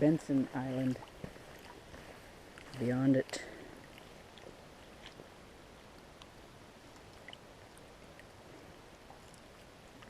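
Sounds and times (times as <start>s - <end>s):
faint ticks: 6.0s - 8.3s.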